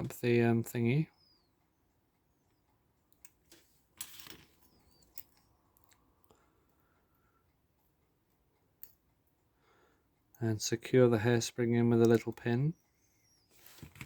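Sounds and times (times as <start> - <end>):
faint sharp clicks of small tools: 2.2 - 10.4, 12.0 - 14.0.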